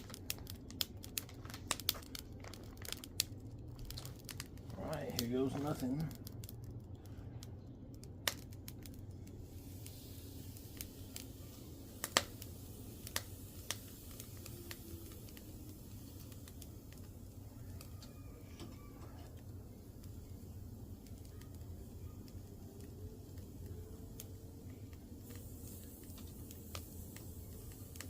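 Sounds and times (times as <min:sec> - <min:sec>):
charcoal fire crackling: 0:00.0 - 0:28.0
sharp pops: 0:07.4 - 0:17.3.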